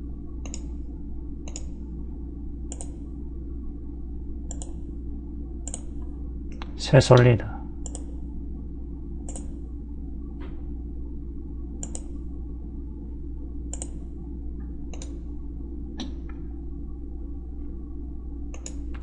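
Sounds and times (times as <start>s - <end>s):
steady low hum: 0.0s - 19.0s
computer mouse clicks: 0.4s - 0.8s, 1.4s - 1.8s, 2.7s - 3.0s, 4.5s - 4.8s, 5.6s - 6.0s, 7.8s - 8.2s, 9.2s - 9.6s, 11.8s - 12.2s, 13.7s - 14.1s, 14.9s - 15.2s, 18.5s - 18.9s.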